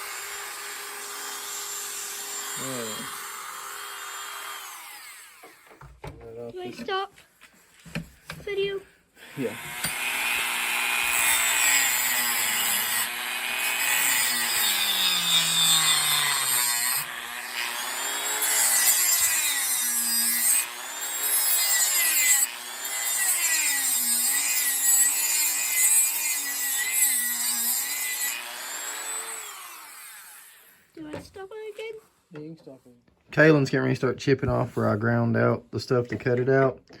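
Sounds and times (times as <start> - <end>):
rotary tool grinding wood: 0.0 - 5.9, 9.2 - 31.0.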